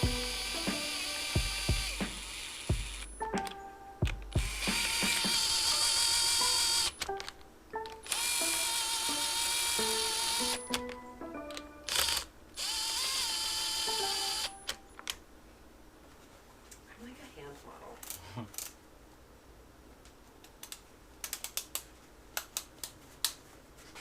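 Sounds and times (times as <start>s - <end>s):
power tool whirring: 0.0s - 3.2s, 4.3s - 7.1s, 8.0s - 10.8s, 11.9s - 14.8s
ratchet clicking: 4.3s - 7.0s.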